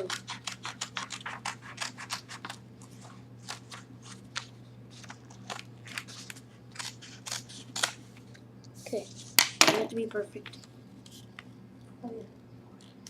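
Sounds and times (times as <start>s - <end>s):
scissors snipping paper: 0.0s - 8.0s
paper crinkling: 0.0s - 8.4s.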